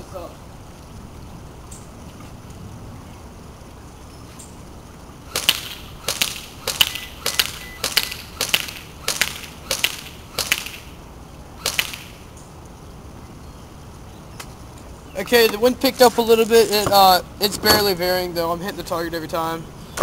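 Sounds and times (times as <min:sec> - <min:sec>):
airsoft gun single shots: 0:05.3 - 0:10.9, 0:11.6 - 0:12.1.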